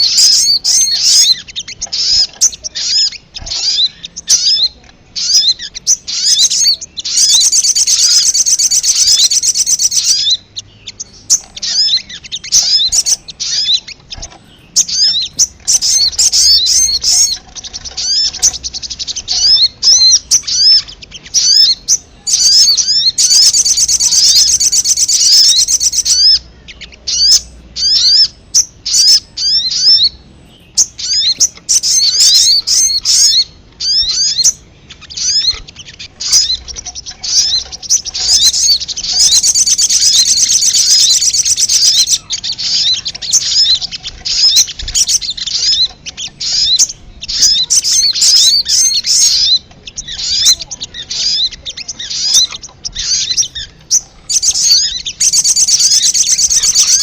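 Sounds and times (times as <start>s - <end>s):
bird chattering trill: 0.0s - 57.0s
bird chirping: 0.0s - 57.0s.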